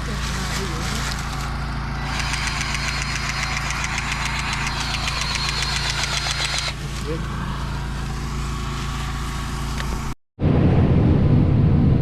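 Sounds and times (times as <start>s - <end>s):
machinery engine hum: 0.0s - 12.0s
rapid even clicking: 2.0s - 6.8s.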